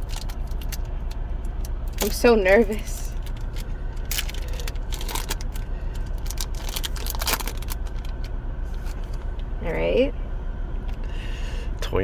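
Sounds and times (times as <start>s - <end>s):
steady low hum: 0.0s - 12.0s
foil wrapper crinkling and tearing: 3.0s - 9.0s.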